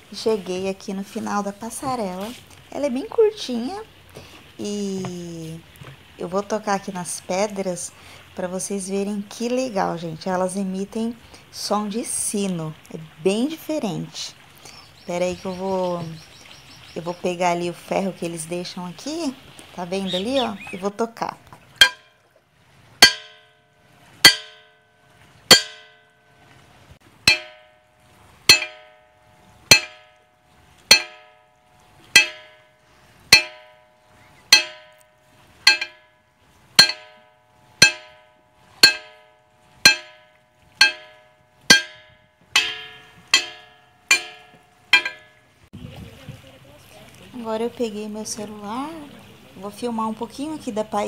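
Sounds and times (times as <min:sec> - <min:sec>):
iron bar striking ringing rocks: 0:21.7 - 0:22.3, 0:23.0 - 0:45.6.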